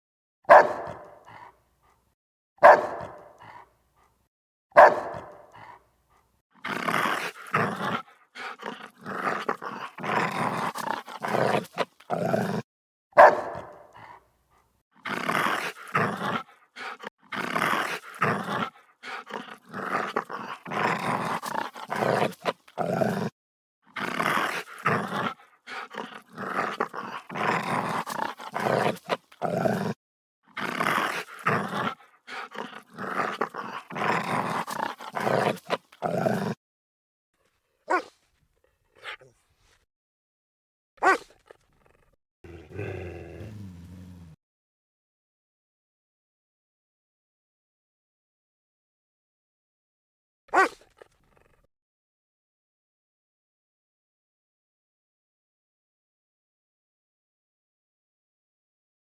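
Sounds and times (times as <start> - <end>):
dog barking aggressively: 0.5 - 1.5, 2.6 - 3.6, 4.8 - 5.7, 13.2 - 13.9
dog growling: 6.6 - 12.6, 15.0 - 23.3, 23.9 - 36.6, 41.1 - 44.4.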